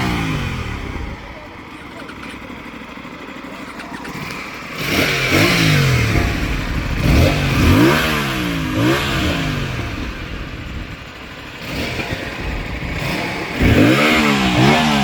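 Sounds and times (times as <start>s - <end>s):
motorcycle engine revving: 0.0s - 15.0s.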